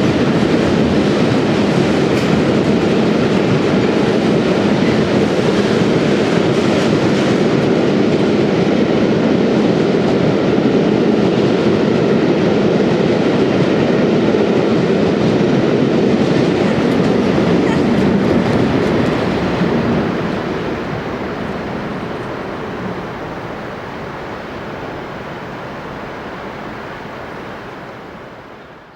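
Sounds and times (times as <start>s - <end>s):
diesel train passing: 16.4s - 28.9s.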